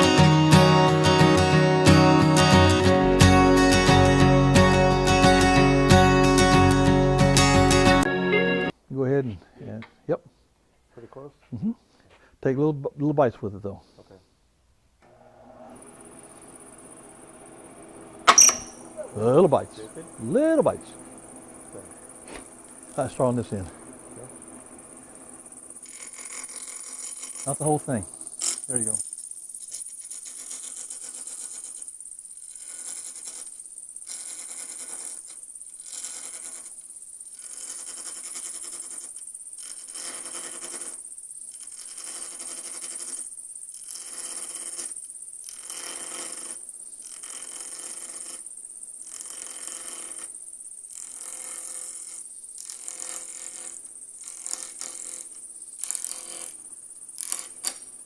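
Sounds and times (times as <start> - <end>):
lathe high whine: 15.1 - 29.0, 49.0 - 56.6
lathe tool scraping wood: 24.7 - 29.0, 29.6 - 57.9.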